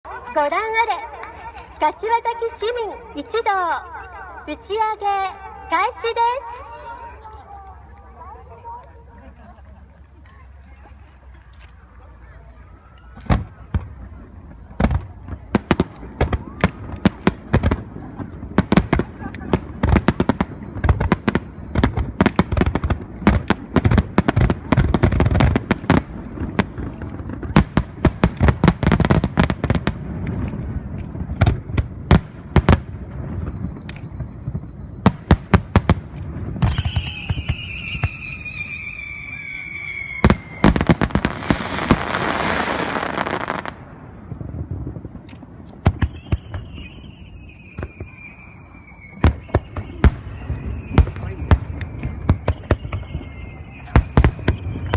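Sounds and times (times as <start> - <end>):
whistling firework tones falling: 12.6 - 30.5, 31.3 - 44.5, 45.8 - 54.9.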